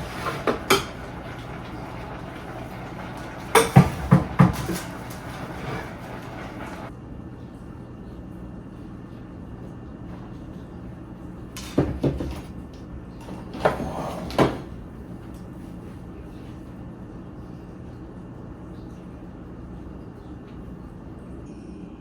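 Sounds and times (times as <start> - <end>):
kitchen clatters: 0.0 - 6.9, 11.5 - 15.5.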